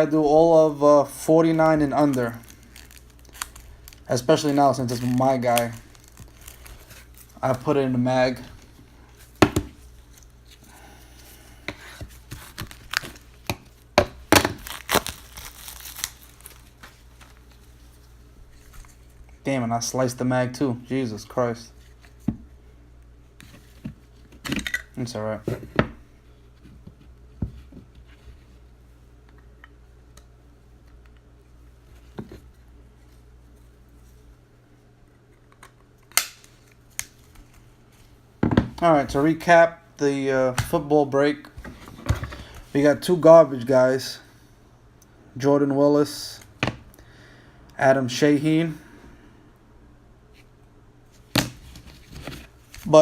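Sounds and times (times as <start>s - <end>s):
low steady hum: 0.0s - 53.0s
cards and plastic holders handled: 1.7s - 10.7s, 11.6s - 17.7s.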